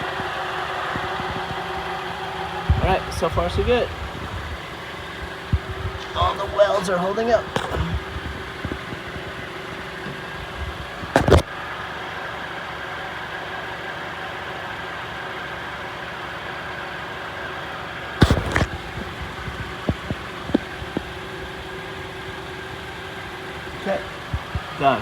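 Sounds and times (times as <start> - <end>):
car engine idling: 0.0 - 25.0
short bursts of noise: 11.0 - 11.5, 18.2 - 20.6.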